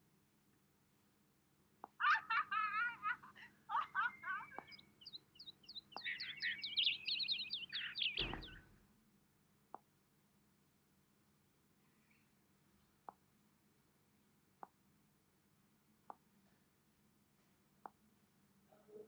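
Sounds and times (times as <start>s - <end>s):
short low thump: 8.2s - 8.7s.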